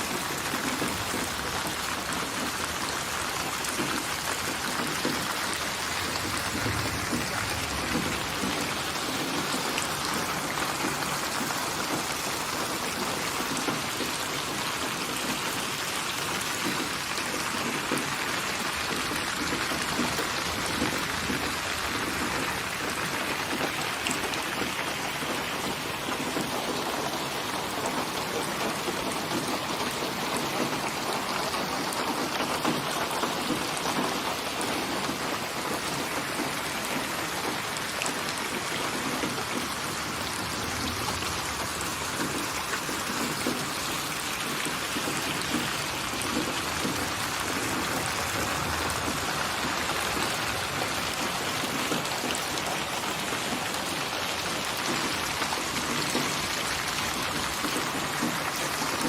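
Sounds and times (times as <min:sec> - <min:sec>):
rain falling: 0:00.0 - 0:59.0.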